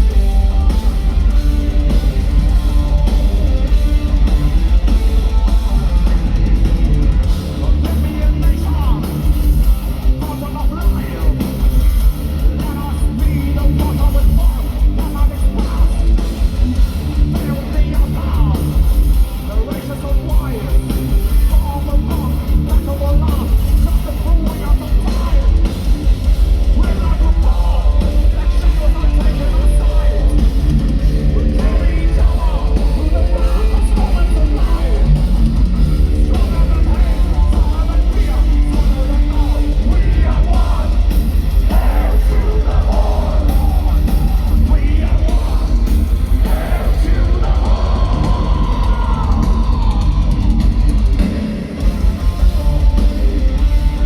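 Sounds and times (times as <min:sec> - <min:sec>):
distorted electric guitars: 0:00.0 - 0:54.0
heavy bass: 0:00.0 - 0:54.0
rapid drumming: 0:00.0 - 0:54.0
shouted vocals: 0:36.2 - 0:51.1.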